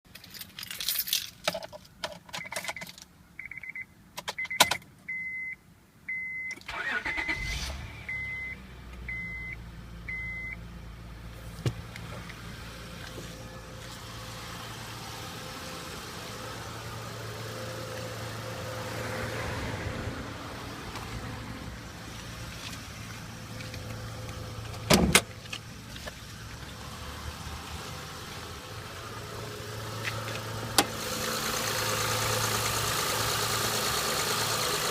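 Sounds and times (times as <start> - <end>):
car chime beeping: 3.4 - 10.6
car engine cranking and idling: 6.5 - 34.9.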